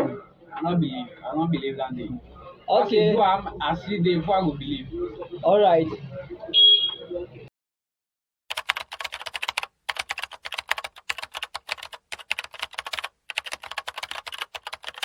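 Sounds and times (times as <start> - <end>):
keyboard typing clicks: 8.5 - 15.0.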